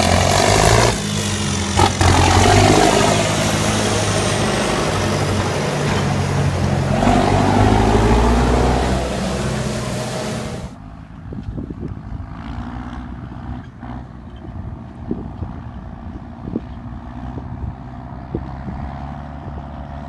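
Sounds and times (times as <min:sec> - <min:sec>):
loud rushing noise: 0:00.0 - 0:10.8
tractor diesel engine under load: 0:00.0 - 0:20.0.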